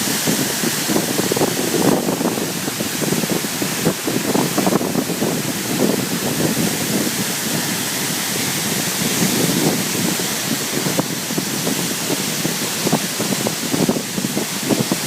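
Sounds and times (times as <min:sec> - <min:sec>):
waterfall rushing: 0:00.0 - 0:15.0
wind buffeting microphone: 0:00.0 - 0:15.0.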